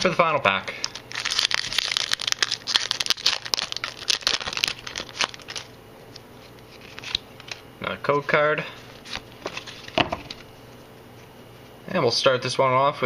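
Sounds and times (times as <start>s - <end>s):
foil wrapper tearing and crinkling: 0.8s - 7.6s.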